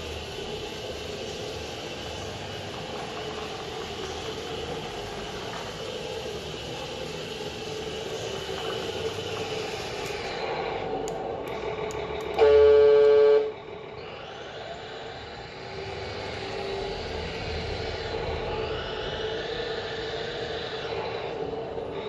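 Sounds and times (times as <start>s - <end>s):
simulated truck engine running: 0.0s - 22.0s
clicks: 11.0s - 13.1s
air horn blast: 12.4s - 13.6s.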